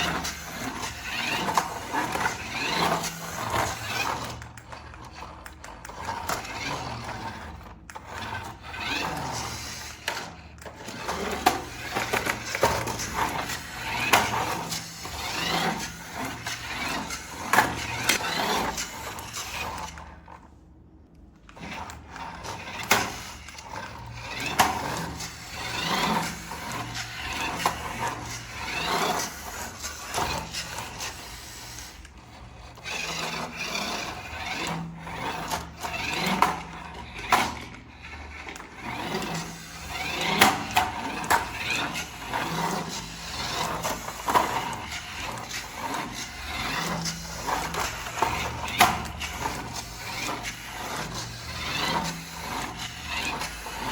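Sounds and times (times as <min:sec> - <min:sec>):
packaging rubbing and scraping: 0:21.6 - 0:53.9.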